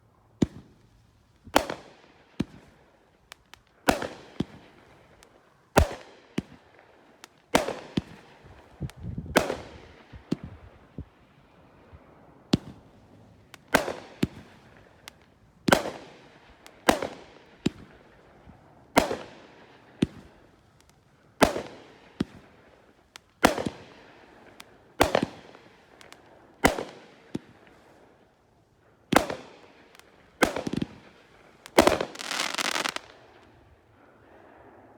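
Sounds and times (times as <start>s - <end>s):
firework bangs echoing: 7.6s - 10.8s, 30.4s - 31.2s, 31.8s - 33.4s.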